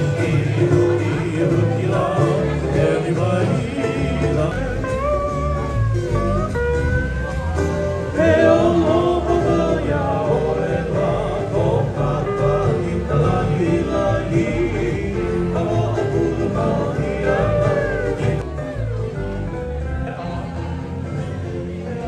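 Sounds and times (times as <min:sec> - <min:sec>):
group of voices singing: 0:00.0 - 0:05.7, 0:07.7 - 0:18.9
low musical accompaniment: 0:00.0 - 0:22.0.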